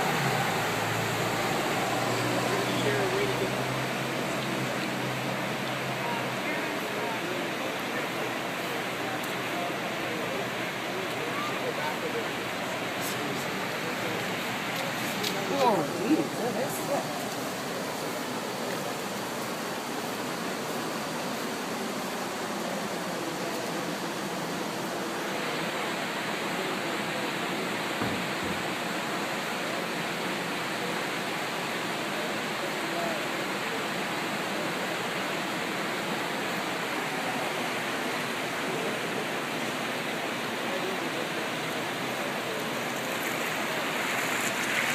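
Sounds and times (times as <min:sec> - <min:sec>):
rushing floodwater: 0:00.0 - 0:44.9
low thump: 0:28.0 - 0:28.6.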